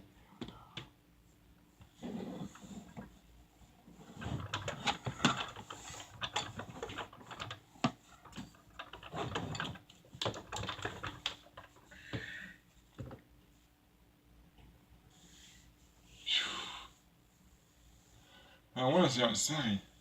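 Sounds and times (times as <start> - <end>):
quick irregular clicks and rustles: 4.2 - 12.0.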